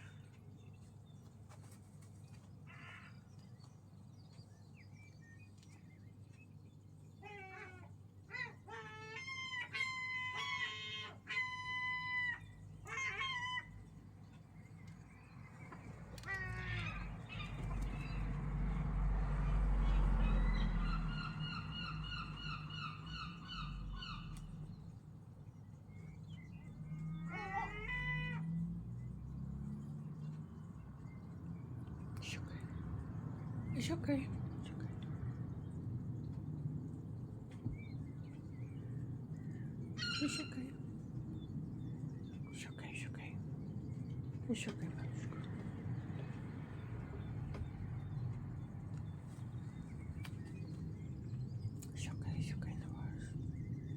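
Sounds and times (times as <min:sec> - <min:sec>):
seagulls calling: 0:07.2 - 0:14.0, 0:15.6 - 0:18.4, 0:19.4 - 0:24.8, 0:26.9 - 0:28.6, 0:39.9 - 0:41.0.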